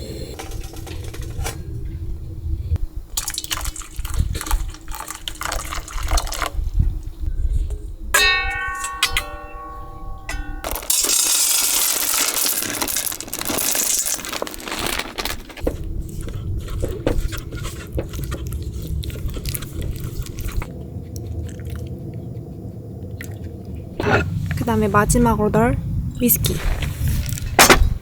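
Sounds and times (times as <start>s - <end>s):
crackling and scraping: 0.2s - 2.1s, 10.6s - 25.4s, 26.3s - 28.0s
low steady hum: 15.6s - 28.0s.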